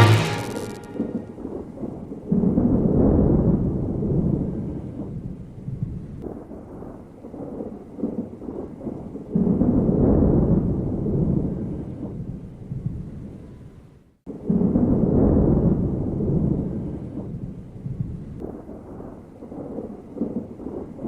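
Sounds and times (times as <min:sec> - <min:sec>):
rolling thunder: 0:00.0 - 0:12.4, 0:14.4 - 0:21.0
rain: 0:00.0 - 0:13.7, 0:14.3 - 0:21.0.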